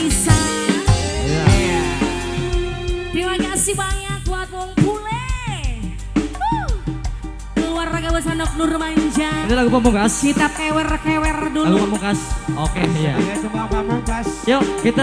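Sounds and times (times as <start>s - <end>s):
sliding melody line: 0.0s - 4.8s, 7.6s - 15.0s
live band music: 0.0s - 15.0s
steady drum beat: 0.0s - 15.0s.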